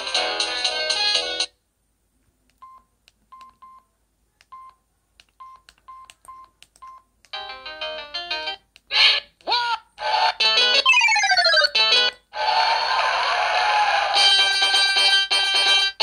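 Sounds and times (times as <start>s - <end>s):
mobile phone keypad beeps: 2.6s - 3.9s, 4.5s - 4.8s, 5.4s - 7.1s
polyphonic ringtone melody: 10.9s - 11.8s.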